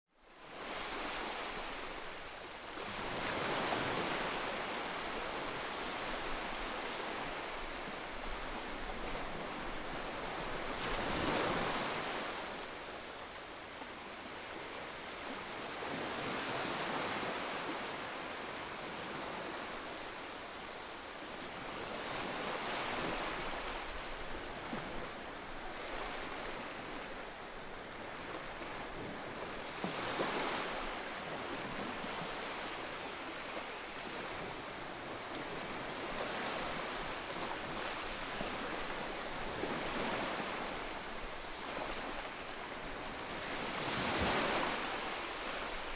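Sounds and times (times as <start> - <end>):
ocean waves breaking: 35.4 - 45.9.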